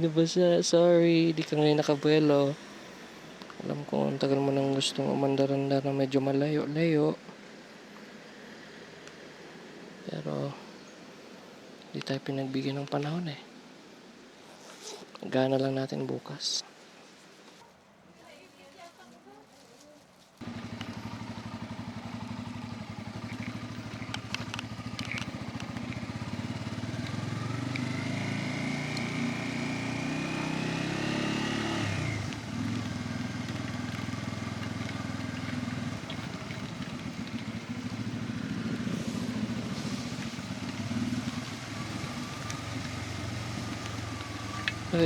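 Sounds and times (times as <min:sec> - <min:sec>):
motorcycle engine running: 0:20.4 - 0:45.0.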